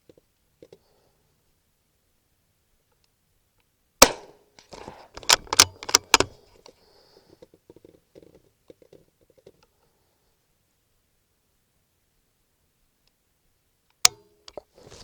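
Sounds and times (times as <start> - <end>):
rifle shot: 4.0 - 4.4.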